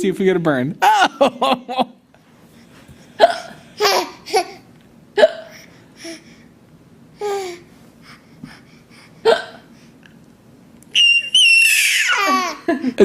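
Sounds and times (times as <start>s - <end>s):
child hiccuping: 9.2s - 9.7s
child laughing squeals: 10.9s - 12.9s.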